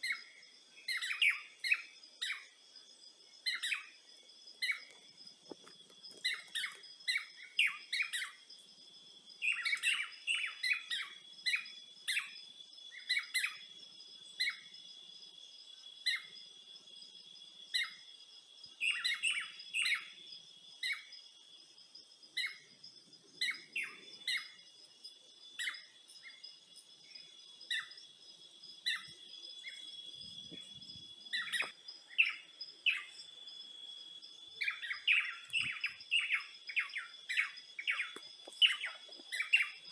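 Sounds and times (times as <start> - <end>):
birds chirping: 22.4 - 28.1, 28.7 - 33.5, 34.2 - 39.9.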